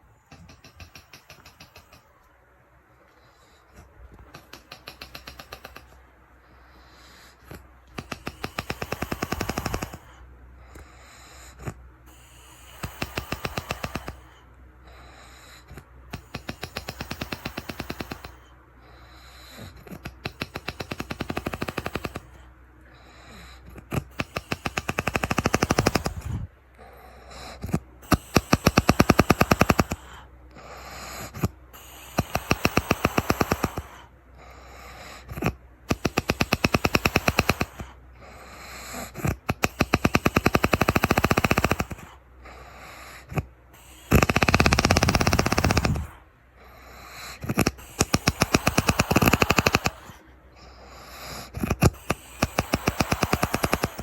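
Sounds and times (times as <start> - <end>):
man snoring: 0.3 - 2.1, 4.4 - 5.9, 7.0 - 10.2, 10.8 - 14.3, 15.1 - 18.4, 19.2 - 22.4, 23.0 - 54.0.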